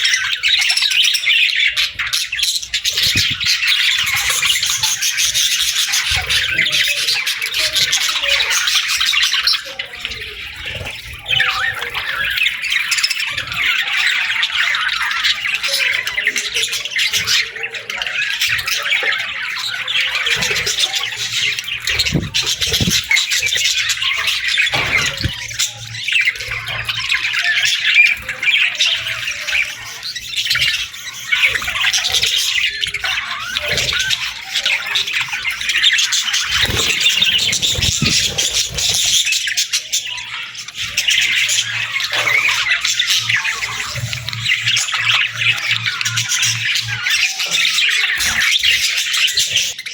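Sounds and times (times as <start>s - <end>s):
budgerigars chattering: 0.0s - 49.9s.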